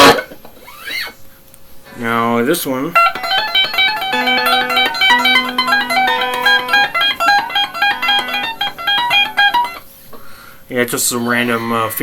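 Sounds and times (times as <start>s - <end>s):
electric guitar fingerpicked: 2.9s - 9.9s.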